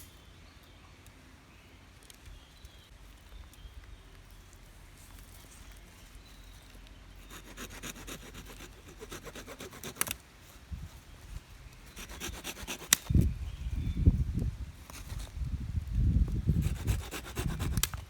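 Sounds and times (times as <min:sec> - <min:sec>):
saw rasping on wood: 0:07.2 - 0:10.2, 0:11.9 - 0:13.1, 0:16.5 - 0:17.9
wood snapping: 0:09.8 - 0:10.2, 0:12.7 - 0:13.3, 0:17.6 - 0:18.0.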